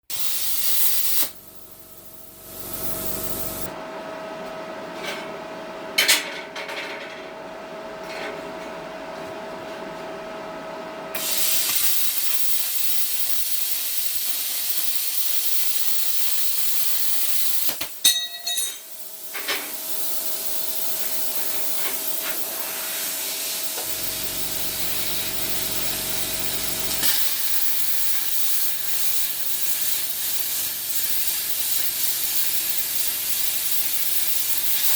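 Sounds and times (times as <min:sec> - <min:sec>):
plasma cutter hissing: 0:00.0 - 0:03.7, 0:11.2 - 0:18.1, 0:18.9 - 0:34.9
thin steady whine: 0:23.6 - 0:34.9.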